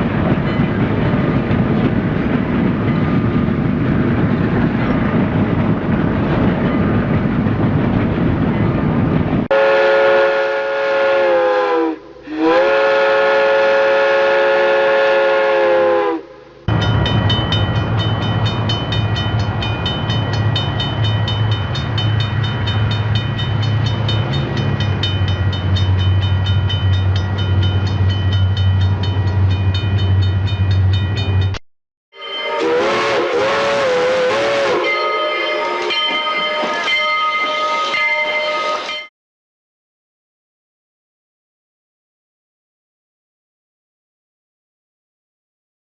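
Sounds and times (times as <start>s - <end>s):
steam locomotive running: 0.0s - 31.6s, 32.2s - 39.1s
steam whistle blasts: 9.5s - 16.6s, 32.2s - 39.1s.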